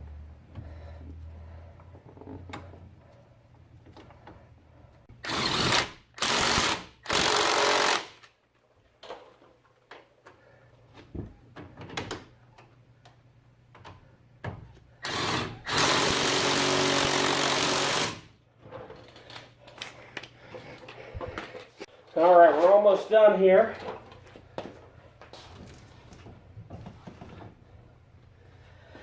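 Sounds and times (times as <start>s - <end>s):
impact wrench bursts: 5.1s - 8.2s, 15.0s - 18.3s.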